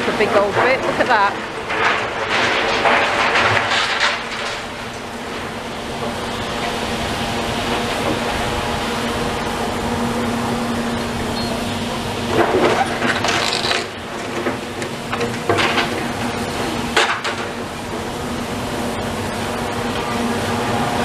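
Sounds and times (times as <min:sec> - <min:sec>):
rubble clattering down: 0:00.0 - 0:06.2, 0:12.3 - 0:17.6
demolition machinery humming: 0:00.0 - 0:21.0.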